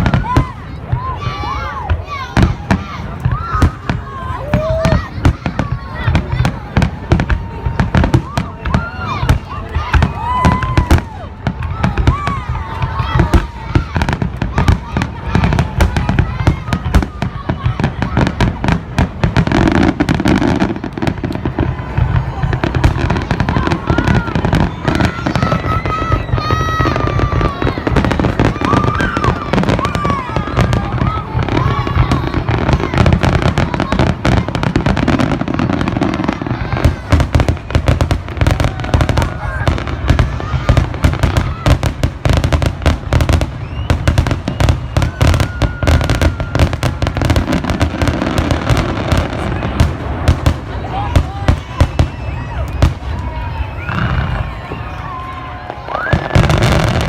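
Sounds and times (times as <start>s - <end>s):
deep fireworks booms: 0.0s - 57.0s
fireworks bangs and crackling: 0.0s - 57.0s
firework whistle: 43.2s - 49.4s.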